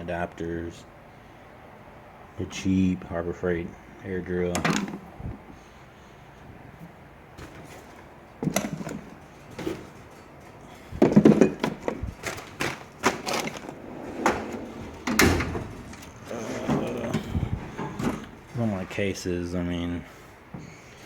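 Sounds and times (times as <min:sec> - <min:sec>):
tools and drawers clattering: 0:04.5 - 0:05.1, 0:07.4 - 0:18.9.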